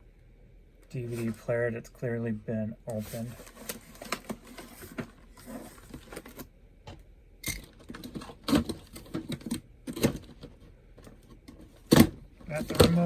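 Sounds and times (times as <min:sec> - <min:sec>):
box handling clicks and knocks: 0:03.4 - 0:13.0.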